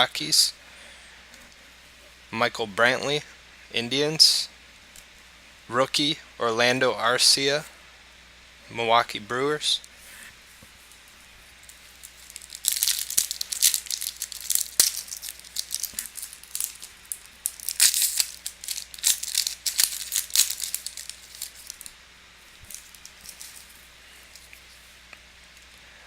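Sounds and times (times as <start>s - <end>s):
foil wrapper crinkling and tearing: 11.6s - 22.0s, 22.6s - 24.6s.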